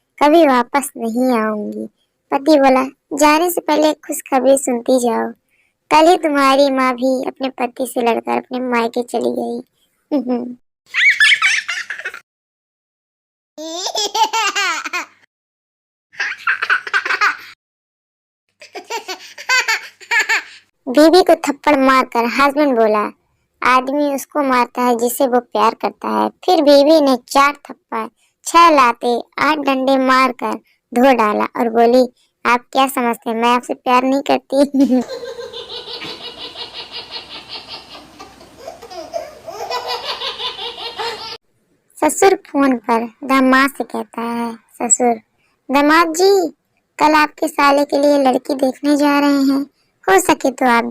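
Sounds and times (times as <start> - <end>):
bursts of laughter: 35.0 - 41.4.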